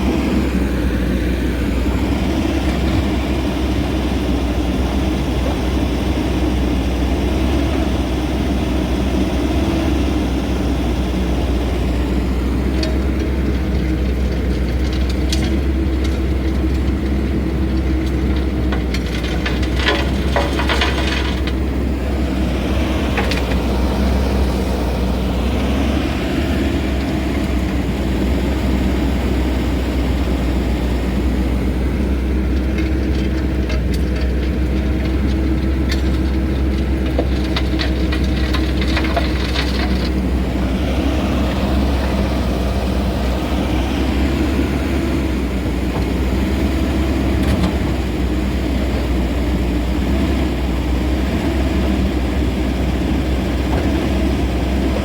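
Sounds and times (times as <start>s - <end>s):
diesel engine running: 0.0s - 55.0s.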